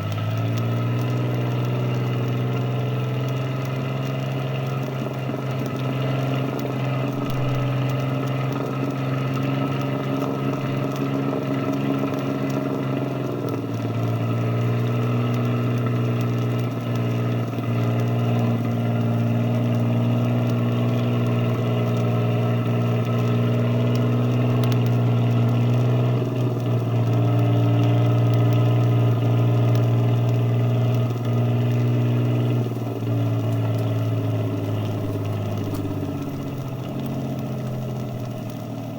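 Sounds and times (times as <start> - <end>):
boat engine droning: 0.0 - 38.9.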